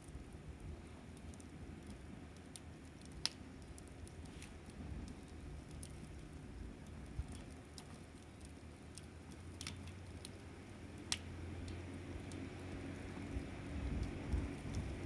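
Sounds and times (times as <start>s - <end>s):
wood fire crackling: 0.0s - 15.0s
low rumble: 10.8s - 15.0s.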